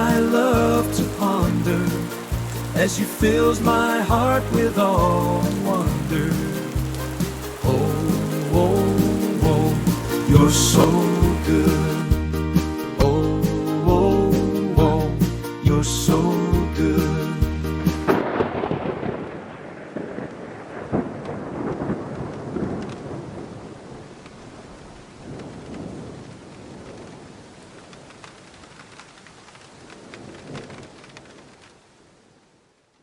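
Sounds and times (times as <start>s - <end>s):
rumbles of thunder: 0.0s - 12.2s, 18.1s - 27.8s, 29.9s - 31.5s
music: 0.0s - 18.2s
steady rain: 0.0s - 33.0s.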